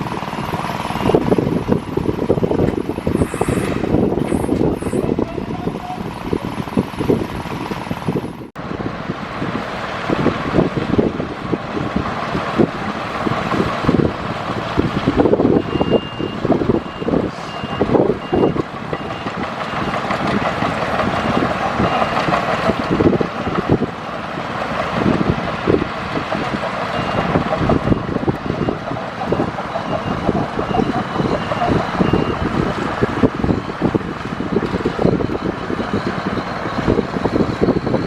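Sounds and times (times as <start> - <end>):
diesel engine running: 0.0 - 38.0
reversing alarm beeping: 0.6 - 1.4, 15.4 - 23.6, 26.9 - 38.0.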